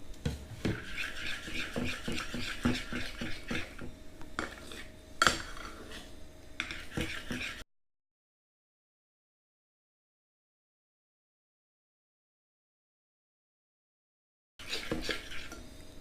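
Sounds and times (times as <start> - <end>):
utensil stirring slime in a bowl: 0.6 - 7.6, 14.6 - 15.8.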